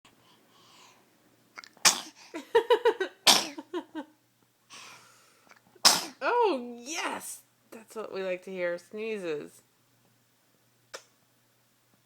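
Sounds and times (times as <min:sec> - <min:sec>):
small child sneezing: 0:01.6 - 0:02.2, 0:05.8 - 0:06.2.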